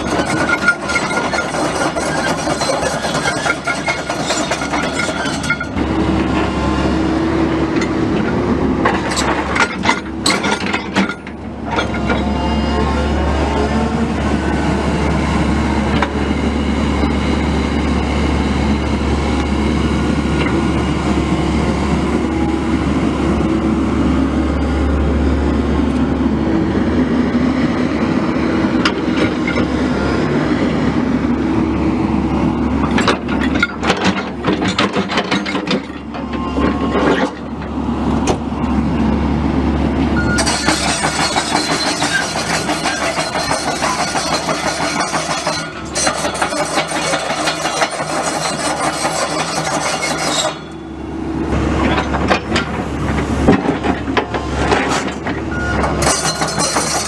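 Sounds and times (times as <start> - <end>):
excavator diesel engine drone: 0.0 - 57.0
metallic clanks and knocks: 7.8 - 12.3, 32.8 - 37.5, 51.8 - 57.0.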